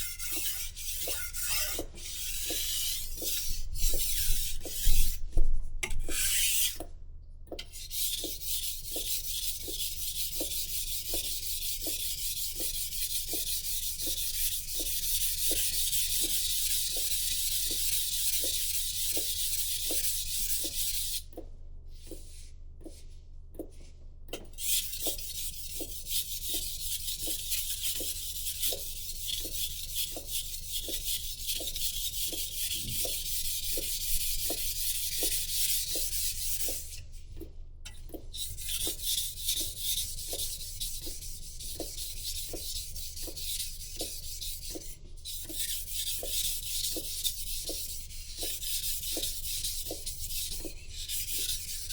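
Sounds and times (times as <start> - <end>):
knife scraping on sharpening stone: 0.0 - 4.9, 5.9 - 6.8.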